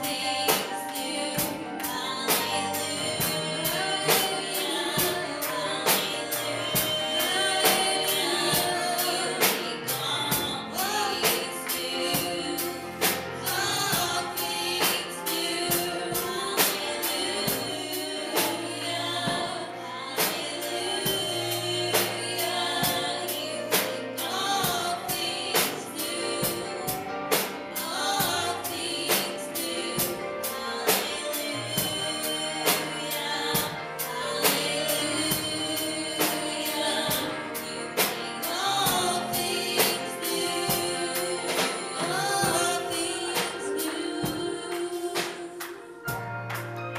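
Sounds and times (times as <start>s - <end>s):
women singing gospel song: 0.0s - 46.5s
steady drum beat: 0.0s - 46.7s
instrumental accompaniment: 0.0s - 46.9s.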